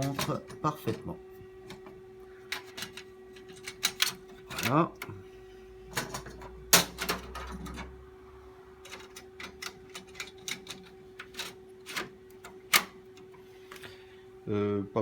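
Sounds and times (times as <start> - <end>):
clicks and knocks of parts handled: 0.0 - 1.0, 2.5 - 5.2, 5.9 - 7.9, 8.8 - 13.3
server humming: 0.0 - 15.0.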